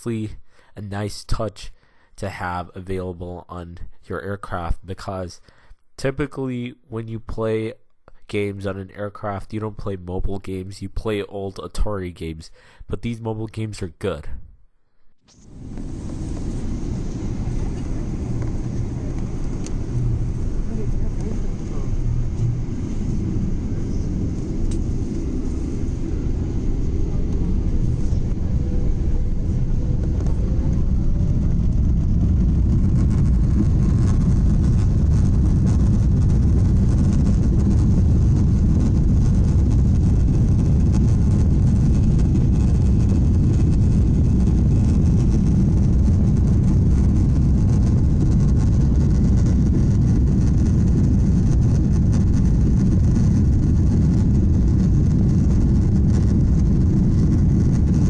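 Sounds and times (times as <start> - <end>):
faint rising whine: 15.3 - 58.0
jet engine roar in cabin: 15.3 - 58.0.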